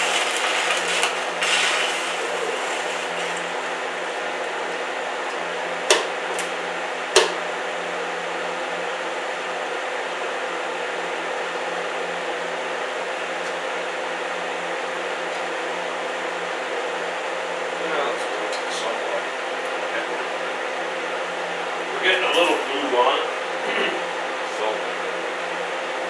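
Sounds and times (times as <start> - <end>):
welding arc hissing: 0.0 - 4.7, 22.0 - 24.1.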